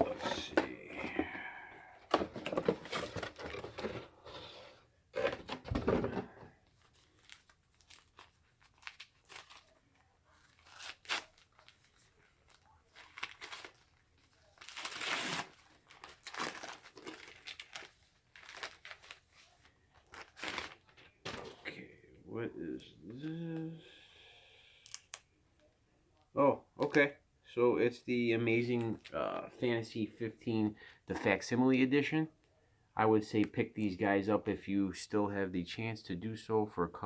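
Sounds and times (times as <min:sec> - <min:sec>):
packaging tearing and crinkling: 0:07.0 - 0:21.6.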